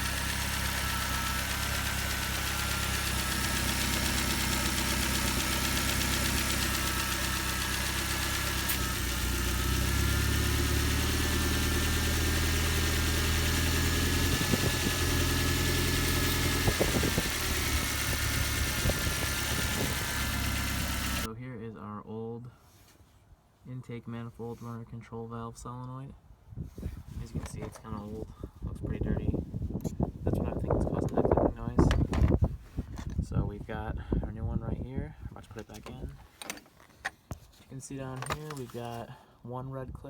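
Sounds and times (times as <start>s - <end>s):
car engine idling with ticking: 0.0s - 21.3s
sharp engine knocks: 31.8s - 32.4s.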